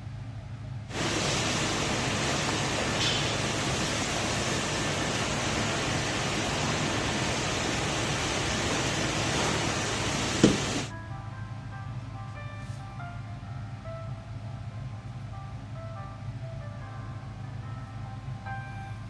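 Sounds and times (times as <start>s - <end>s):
loud steady hiss: 0.7s - 19.0s
faint background music: 10.9s - 19.0s.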